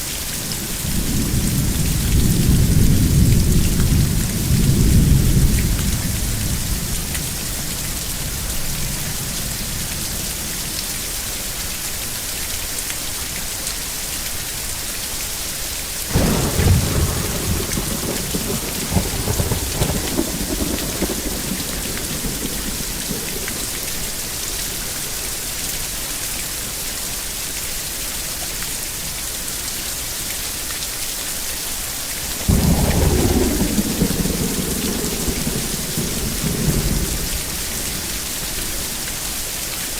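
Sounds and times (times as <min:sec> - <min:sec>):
heavy rain hissing: 0:00.0 - 0:39.9
thunder rumbling: 0:00.8 - 0:10.4, 0:16.1 - 0:26.0, 0:32.3 - 0:39.6.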